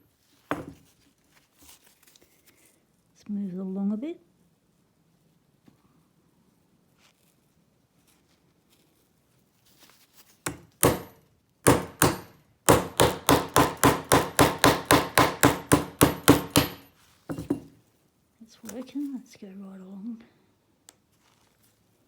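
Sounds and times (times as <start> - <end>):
hammer striking plastic padlock: 10.5 - 16.9.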